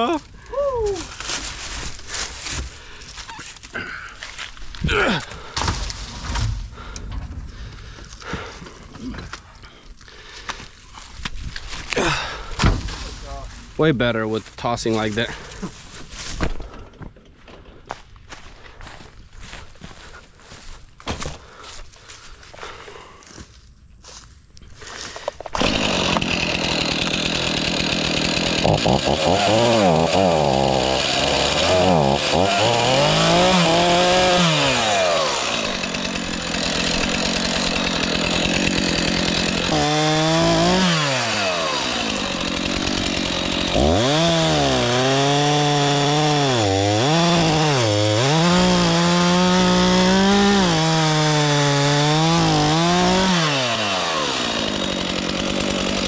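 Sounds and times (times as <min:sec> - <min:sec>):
chainsaw cutting wood: 0:24.9 - 0:56.0.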